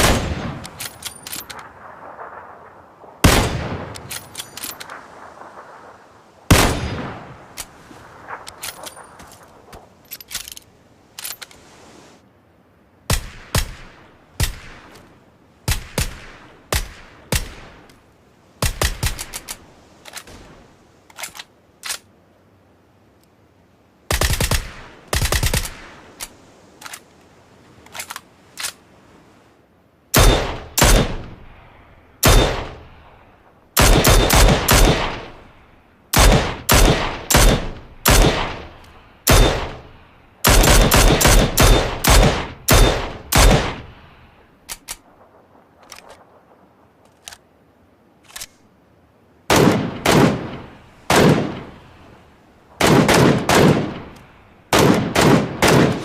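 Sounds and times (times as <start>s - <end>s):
single gunshots: 0.0s - 0.8s, 3.2s - 5.1s, 6.5s - 7.5s, 30.2s - 31.5s, 32.2s - 33.0s, 33.8s - 35.4s, 36.1s - 44.0s, 49.5s - 51.8s, 52.8s - 56.0s
automatic gunfire bursts: 33.8s - 35.3s, 36.2s - 38.6s, 40.5s - 43.8s.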